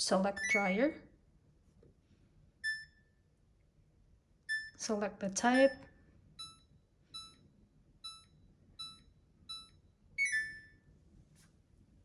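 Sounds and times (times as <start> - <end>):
multi-tone beep: 0.4 - 0.8, 2.6 - 3.0, 4.5 - 4.8, 5.5 - 7.4, 8.0 - 10.8.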